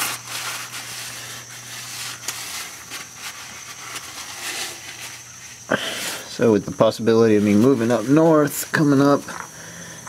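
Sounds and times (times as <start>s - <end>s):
napkin rubbing on metal: 0.0s - 5.6s, 7.2s - 9.0s.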